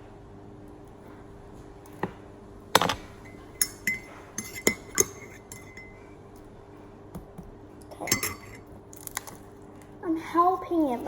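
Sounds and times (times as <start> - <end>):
spoon clinking against bowl: 2.8 - 6.2, 7.8 - 9.1.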